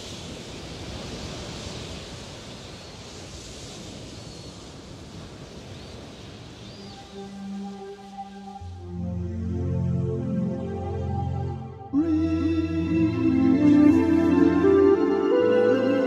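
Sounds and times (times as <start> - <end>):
soft ambient music: 6.8 - 16.0.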